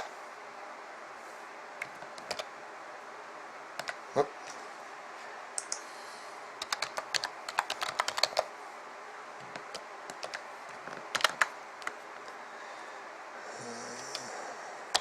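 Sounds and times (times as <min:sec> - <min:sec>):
typing on computer keyboard: 0:01.8 - 0:02.5, 0:03.8 - 0:04.0, 0:06.6 - 0:08.5, 0:09.4 - 0:12.0.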